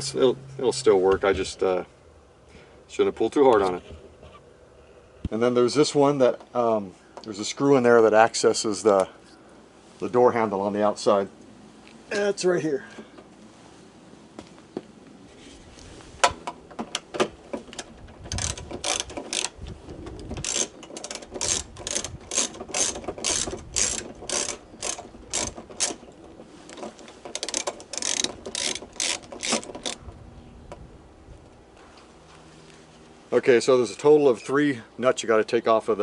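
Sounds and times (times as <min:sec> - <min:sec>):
ratchet wrench clicking: 0:18.3 - 0:19.6, 0:20.4 - 0:26.0, 0:27.3 - 0:30.0.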